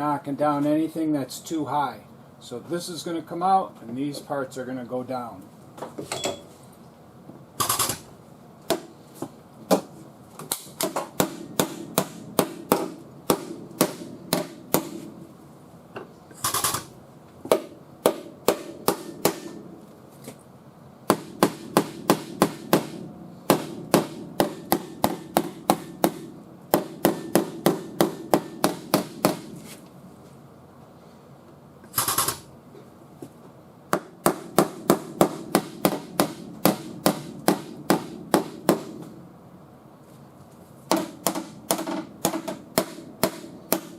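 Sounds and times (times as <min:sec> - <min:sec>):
hammer blows on sheet metal: 0:11.2 - 0:15.1, 0:17.5 - 0:19.6, 0:21.1 - 0:29.6, 0:34.0 - 0:39.1.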